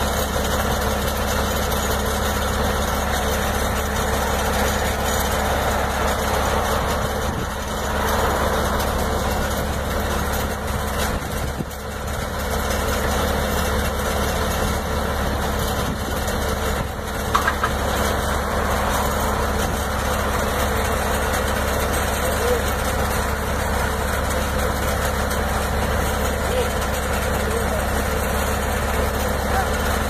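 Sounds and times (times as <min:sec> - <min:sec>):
truck engine idling: 0:00.0 - 0:30.0.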